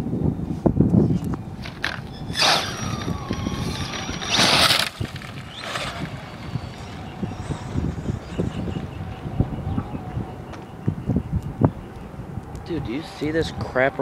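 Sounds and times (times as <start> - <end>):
thin motor whine: 1.2 - 11.8.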